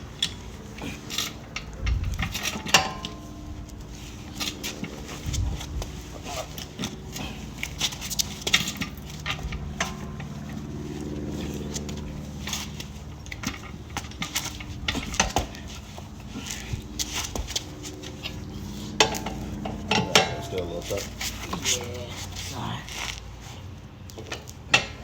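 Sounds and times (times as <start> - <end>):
low hum: 0.0 - 22.5.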